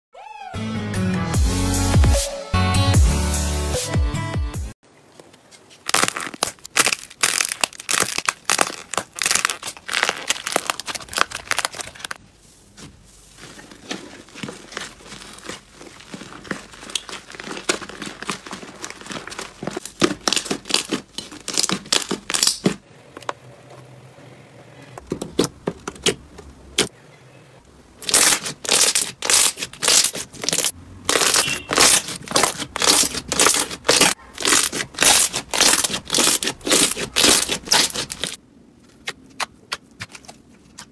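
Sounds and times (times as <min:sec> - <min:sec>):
slime squeezed crackling and crunching: 0:05.8 - 0:12.2, 0:13.4 - 0:22.8, 0:28.0 - 0:38.4.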